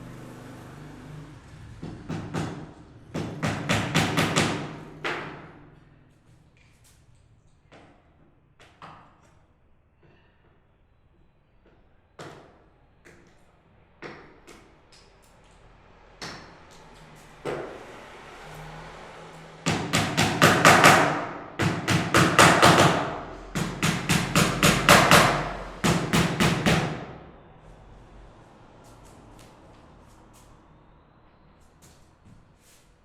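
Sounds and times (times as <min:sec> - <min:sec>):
hammer nailing into wood: 0:01.8 - 0:05.6, 0:19.6 - 0:27.2.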